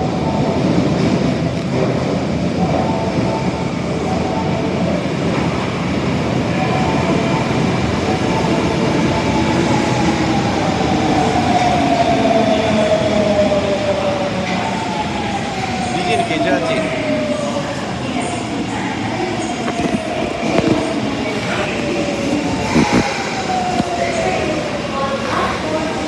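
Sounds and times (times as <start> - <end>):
wheels rumbling on rail: 4.8 - 26.0
train motor whine: 9.1 - 18.5, 19.4 - 26.0.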